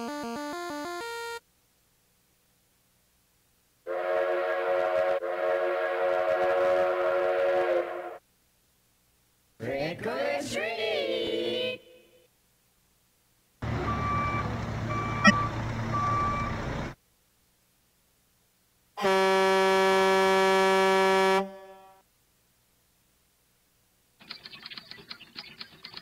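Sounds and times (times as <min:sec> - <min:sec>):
held horn chord: 0:03.9 - 0:08.2
electronic tones: 0:13.9 - 0:16.4.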